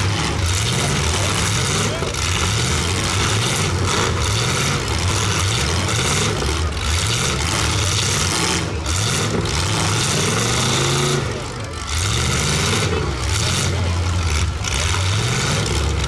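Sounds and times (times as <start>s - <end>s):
car engines revving: 0.0s - 16.0s.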